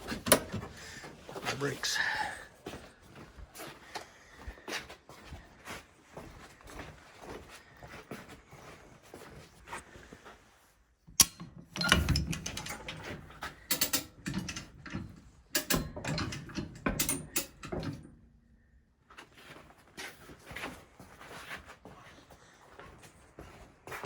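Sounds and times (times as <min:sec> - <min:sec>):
metal hardware clanking and rattling: 0:00.0 - 0:00.7, 0:11.1 - 0:18.2.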